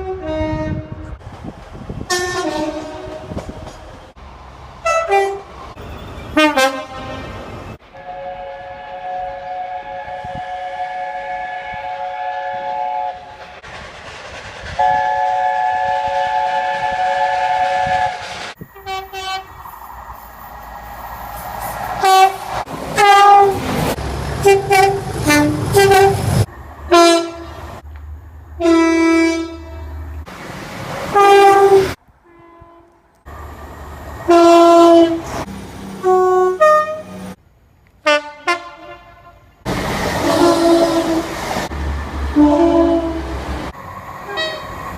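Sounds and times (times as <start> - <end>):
train horn blasts: 0.0 - 1.2, 2.1 - 3.4, 4.8 - 5.5, 6.3 - 13.4, 14.8 - 19.5, 22.0 - 22.4, 23.0 - 23.7, 24.4 - 27.6, 28.6 - 30.0, 31.1 - 33.0, 34.3 - 35.4, 36.0 - 37.3, 38.0 - 39.5, 40.2 - 41.4, 42.3 - 43.4, 44.3 - 44.8
low rumble of train: 0.0 - 44.9.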